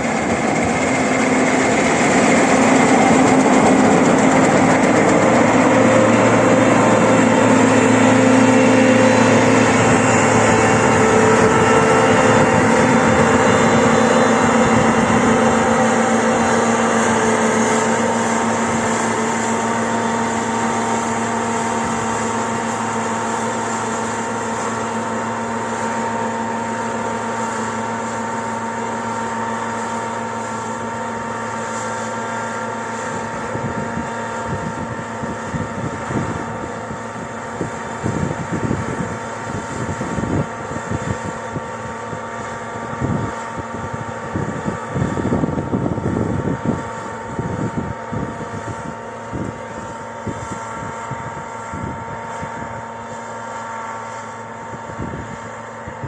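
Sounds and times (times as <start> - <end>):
low rumbling bursts: 0.0 - 28.7
combine harvester humming: 0.0 - 56.0.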